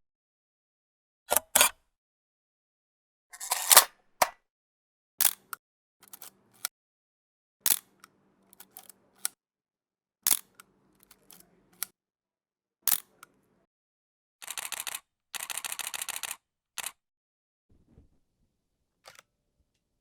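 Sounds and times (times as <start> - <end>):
sharp mechanical clicks: 14.4 - 17.0.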